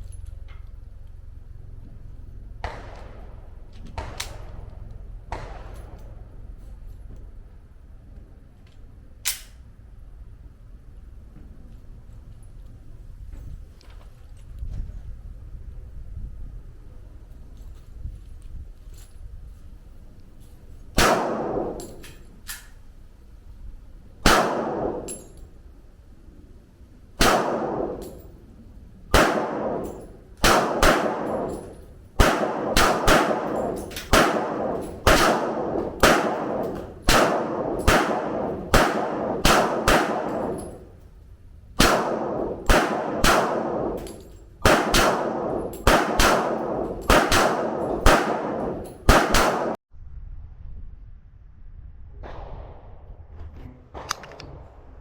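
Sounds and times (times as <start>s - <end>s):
gunshots with ringing echo: 2.6s - 6.6s, 21.0s - 22.1s, 24.2s - 25.4s, 27.2s - 28.4s, 29.1s - 40.9s, 41.8s - 49.8s.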